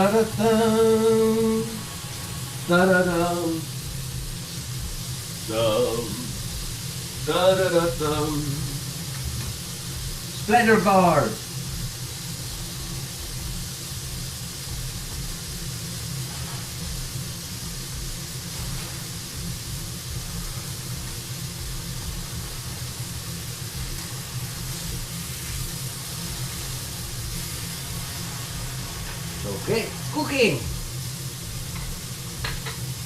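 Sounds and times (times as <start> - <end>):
low steady hum: 0.0 - 33.0
meat sizzling on grill pan: 0.0 - 33.0.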